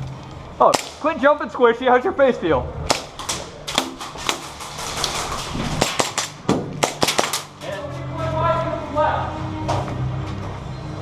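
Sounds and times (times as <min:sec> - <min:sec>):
airsoft gun shots: 0:00.6 - 0:01.1, 0:02.9 - 0:04.7, 0:05.7 - 0:07.6.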